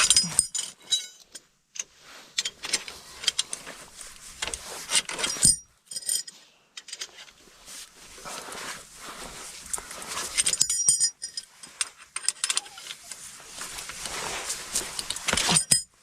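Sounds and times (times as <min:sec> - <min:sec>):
metallic clinks and knocks: 0:00.0 - 0:01.5, 0:04.4 - 0:07.3, 0:10.3 - 0:13.0, 0:15.1 - 0:16.0.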